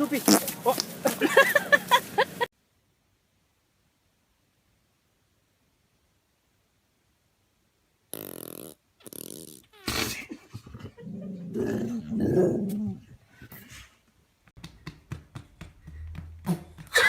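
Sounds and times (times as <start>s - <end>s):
dog growling and whining: 9.6s - 13.6s.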